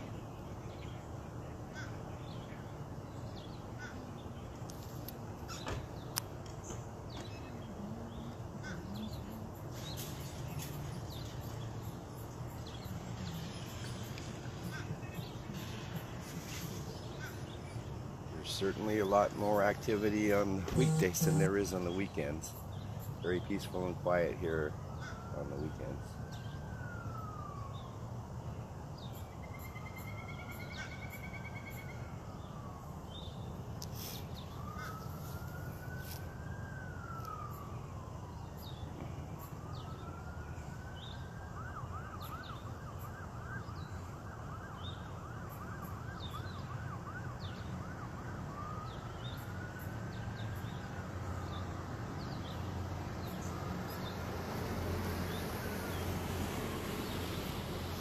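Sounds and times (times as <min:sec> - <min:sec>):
emergency vehicle siren: 0:04.6 - 0:58.0
small birds chirping: 0:18.4 - 0:27.0.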